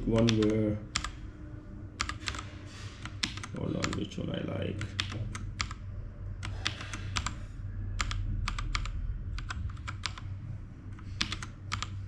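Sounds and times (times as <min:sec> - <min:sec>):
mechanical keyboard key presses: 0:11.2 - 0:11.9.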